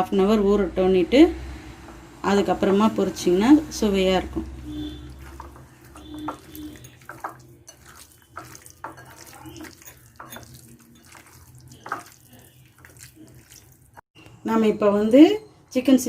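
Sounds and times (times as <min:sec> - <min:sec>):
wet squishing of chicken mixing: 0:03.3 - 0:14.1.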